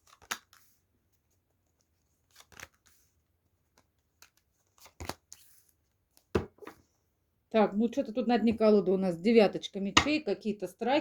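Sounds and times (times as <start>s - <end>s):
cards shuffling and rustling: 0.0s - 6.8s.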